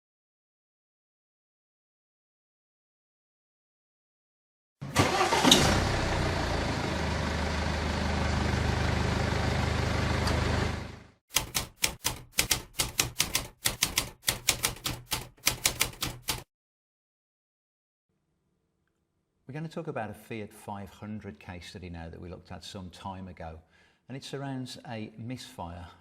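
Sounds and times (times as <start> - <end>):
short engine bursts: 4.8 - 11.2
car engine running: 4.9 - 11.2.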